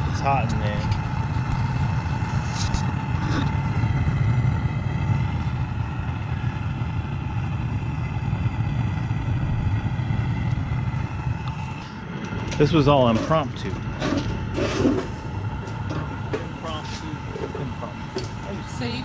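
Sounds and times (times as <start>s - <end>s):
gas burner rumbling: 0.0s - 19.0s
hissing gas and flame: 0.0s - 19.0s.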